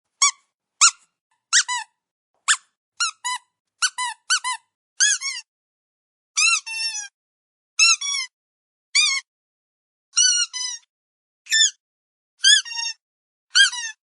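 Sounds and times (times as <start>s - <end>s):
squeaky dog toy squeaking: 0.1s - 5.5s, 6.4s - 7.1s, 7.8s - 8.3s, 9.0s - 9.3s, 10.2s - 10.9s, 11.5s - 11.8s, 12.4s - 14.0s.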